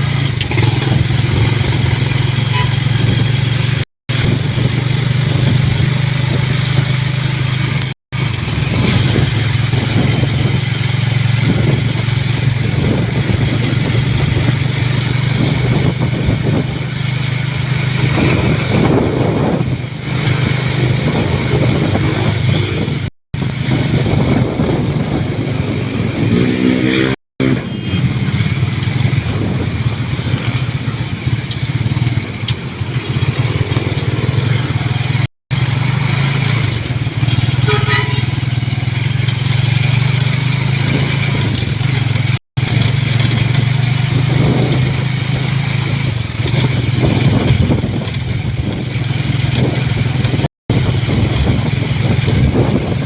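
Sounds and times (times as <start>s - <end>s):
road and wind noise: 0.0s - 53.0s
vehicle engine drone: 0.0s - 53.0s
short pitched vehicle tone: 2.3s - 3.0s, 37.6s - 38.4s.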